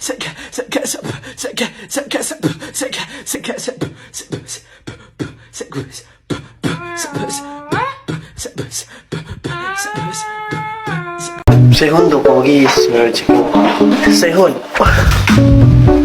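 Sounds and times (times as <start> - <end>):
person beatboxing: 0.0 - 11.7, 14.8 - 15.7.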